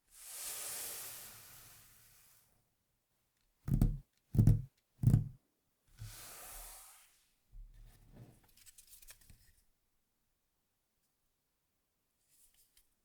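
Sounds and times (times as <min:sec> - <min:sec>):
heavy thumps: 0:03.7 - 0:05.4.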